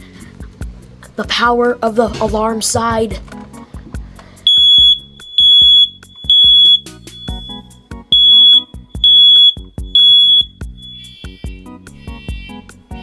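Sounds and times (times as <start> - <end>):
smoke alarm beeping: 4.5 - 11.4.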